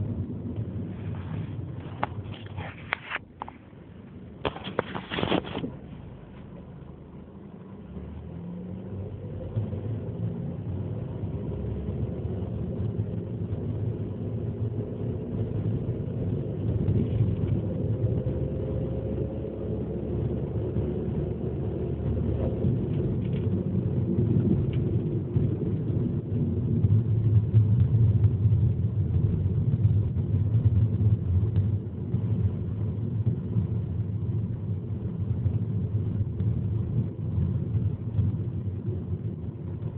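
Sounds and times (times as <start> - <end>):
car engine accelerating through gears: 7.6 - 33.8.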